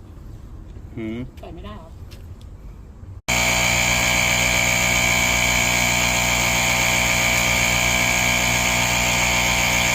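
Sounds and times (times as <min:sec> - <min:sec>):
air compressor running: 0:03.3 - 0:09.9.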